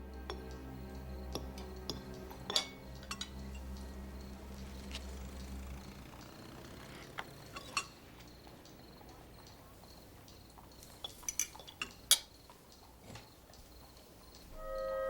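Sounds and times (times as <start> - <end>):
tableware clinking: 1.3 - 4.1, 7.0 - 8.3, 10.8 - 12.3.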